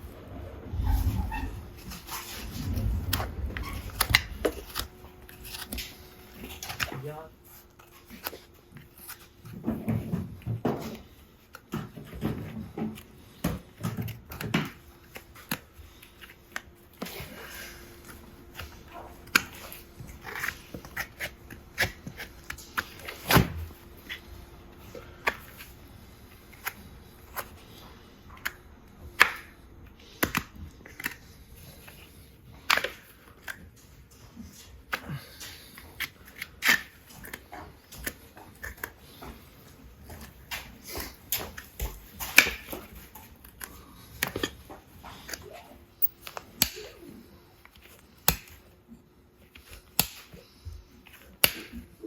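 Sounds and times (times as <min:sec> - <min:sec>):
low sounds: 0:00.0 - 0:05.7.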